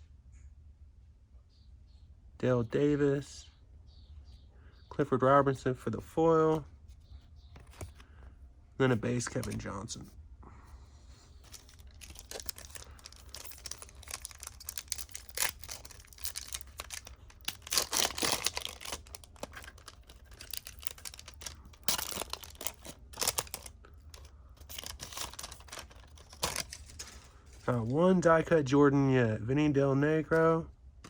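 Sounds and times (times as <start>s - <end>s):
foil wrapper crinkling and tearing: 11.4s - 27.8s.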